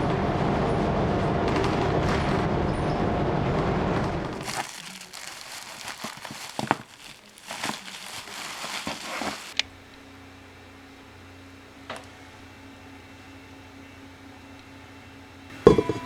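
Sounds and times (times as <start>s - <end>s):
packaging crinkling: 4.4s - 9.6s.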